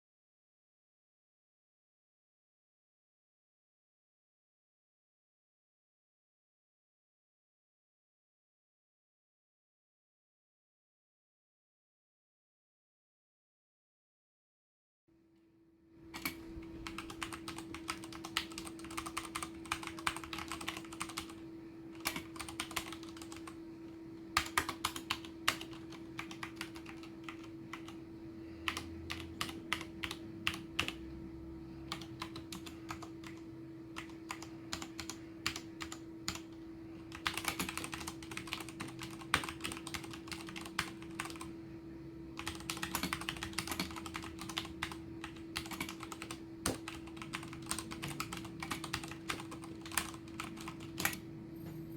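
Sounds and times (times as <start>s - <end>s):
mechanical keyboard typing: 16.2s - 21.4s, 22.0s - 23.6s, 24.4s - 28.0s, 28.7s - 31.0s, 31.9s - 33.4s, 34.0s - 36.5s, 37.1s - 41.5s, 42.4s - 51.3s.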